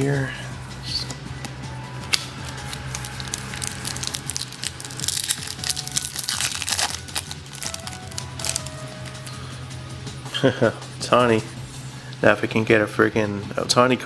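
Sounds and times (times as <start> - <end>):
wrapper crinkling: 2.1 - 9.4.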